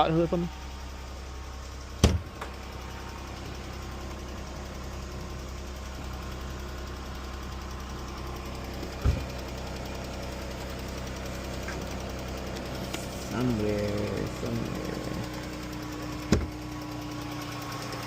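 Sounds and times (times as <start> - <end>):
engine idling with ticking: 0.0 - 18.0
thump: 2.0 - 2.5, 9.0 - 9.3, 16.3 - 16.6.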